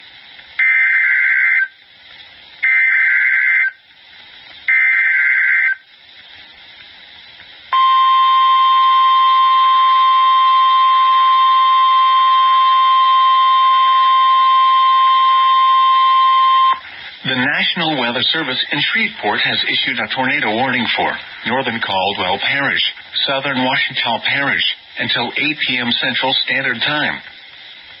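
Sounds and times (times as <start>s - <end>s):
steady single-pitch alert tone: 7.8s - 16.8s.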